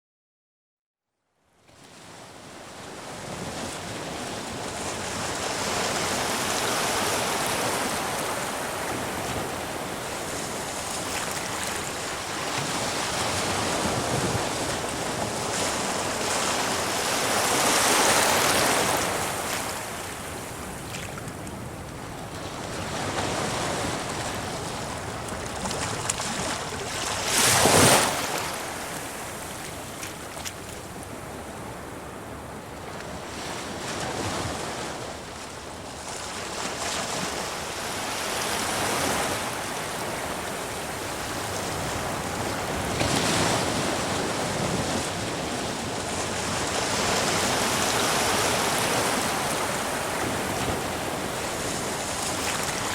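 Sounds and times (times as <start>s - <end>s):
sea waves crashing on rocks: 4.8s - 20.9s, 22.5s - 29.9s, 37.1s - 52.9s.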